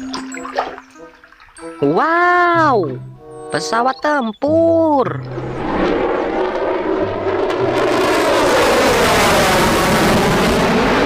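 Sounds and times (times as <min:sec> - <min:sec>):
fighter jet flying past: 0:05.2 - 0:11.0.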